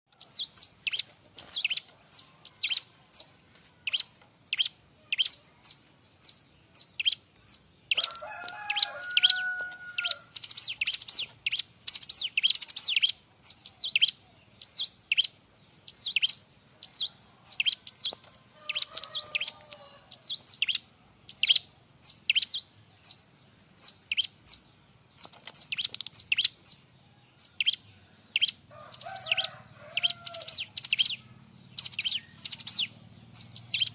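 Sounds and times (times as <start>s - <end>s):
lower steady bird notes: 0.1s - 33.9s
bird chirping sharply: 3.9s - 26.8s, 30.0s - 33.9s.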